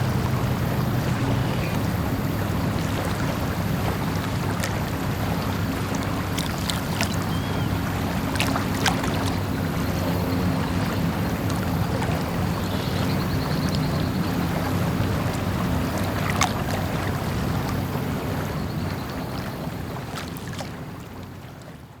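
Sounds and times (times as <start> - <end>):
boat engine running: 0.0 - 22.0.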